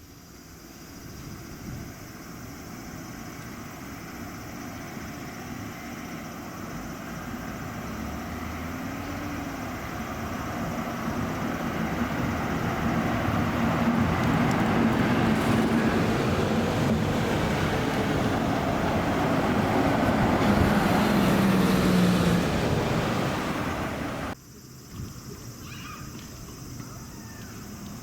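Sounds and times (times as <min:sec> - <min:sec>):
bus engines running: 0:02.2 - 0:24.4
tyre and traffic noise: 0:03.4 - 0:24.4.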